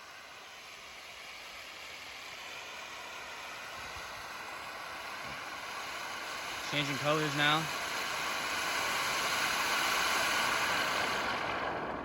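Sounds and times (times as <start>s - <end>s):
firework fountain hissing: 0.0s - 12.0s.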